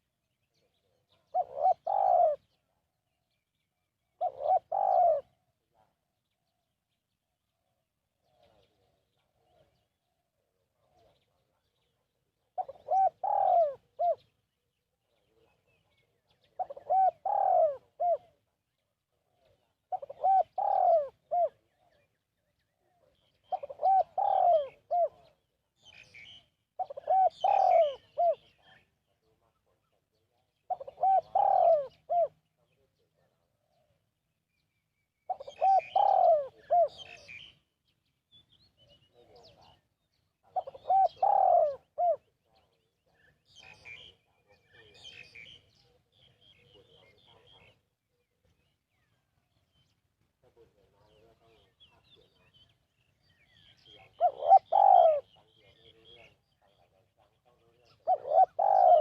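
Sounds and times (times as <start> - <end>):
dove cooing: 0.9 - 2.6, 4.2 - 5.9, 12.4 - 14.3, 16.4 - 18.4, 19.2 - 22.1, 22.8 - 28.9, 30.6 - 32.5, 35.3 - 37.5, 40.4 - 42.3, 53.8 - 59.0.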